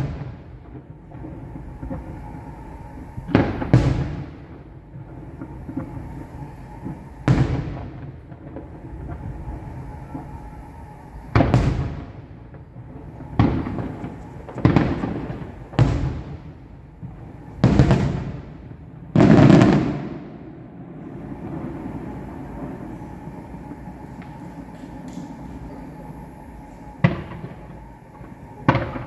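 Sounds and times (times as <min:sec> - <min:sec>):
fireworks booming: 0:00.0 - 0:29.0.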